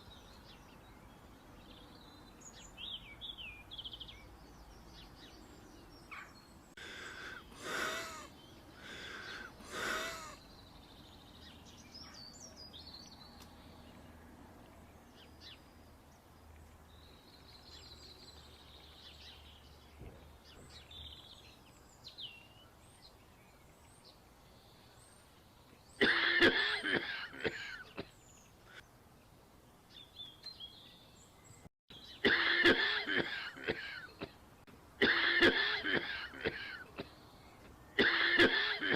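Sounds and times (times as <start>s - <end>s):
small birds chirping: 0.0s - 38.9s
person coughing: 26.0s - 28.1s, 32.2s - 34.4s, 35.0s - 37.1s, 38.0s - 38.9s.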